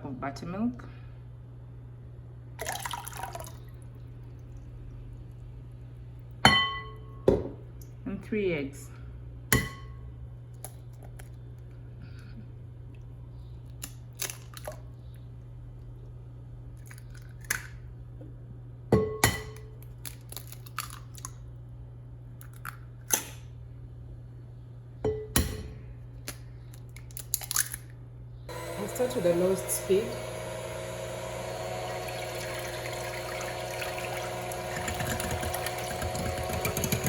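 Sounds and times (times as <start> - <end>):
steady low hum: 0.0 - 37.0
eggs cracking against a bowl: 19.6 - 21.5, 26.2 - 28.0, 32.3 - 37.0.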